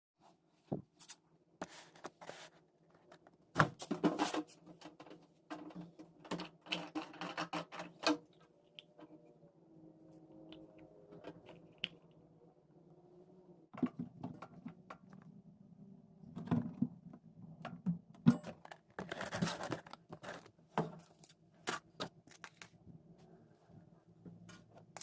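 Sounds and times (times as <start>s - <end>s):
clicks knocks and rustles of handling: 2.0s - 9.1s.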